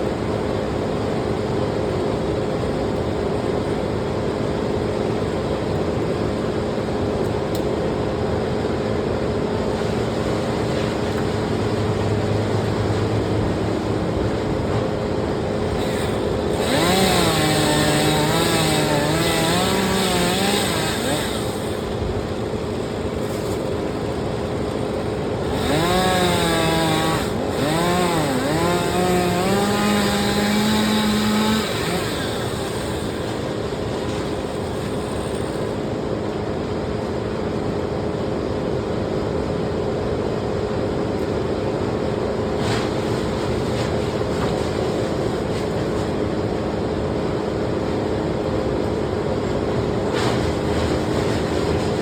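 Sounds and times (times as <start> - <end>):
steady engine drone: 0.0 - 52.0
chainsaw engine revving: 9.7 - 35.9, 42.6 - 46.2, 49.8 - 52.0.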